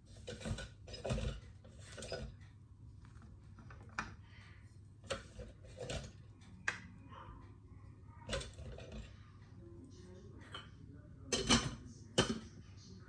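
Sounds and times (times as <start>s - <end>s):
cutlery clicking against dishes: 11.3s - 12.5s.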